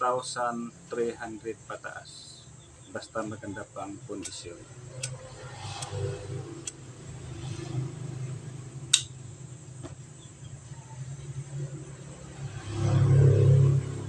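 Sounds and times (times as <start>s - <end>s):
metal lighter clicks: 8.9s - 9.1s.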